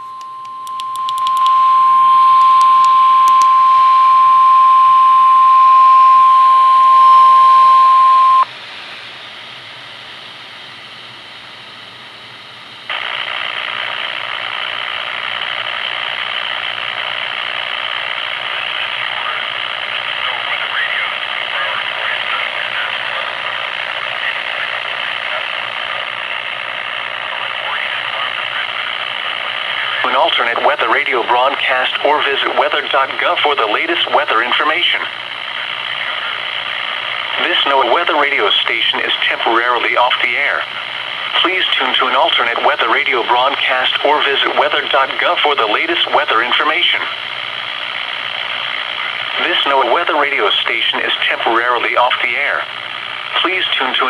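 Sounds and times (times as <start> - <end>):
steady warning alarm tone: 0.0 - 8.5
radio static hiss: 0.8 - 8.5, 12.9 - 54.0.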